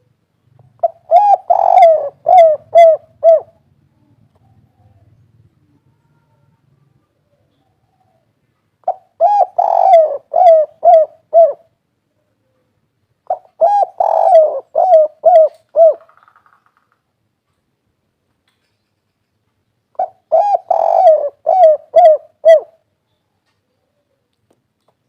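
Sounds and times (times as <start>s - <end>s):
dove cooing: 0.0s - 3.7s, 7.3s - 11.8s, 13.3s - 16.3s, 20.0s - 22.9s.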